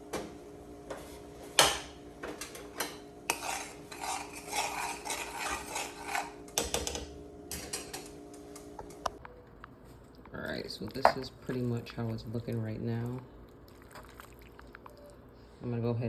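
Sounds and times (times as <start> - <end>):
utensils clinking on cookware: 0.9 - 9.0
stirring and scraping in a pot: 3.2 - 6.6.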